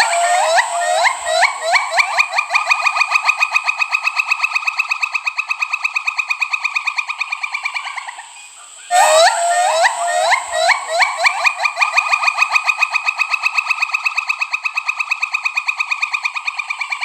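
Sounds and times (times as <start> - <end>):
gibbon trilling call: 0.0 - 3.1, 8.9 - 12.4.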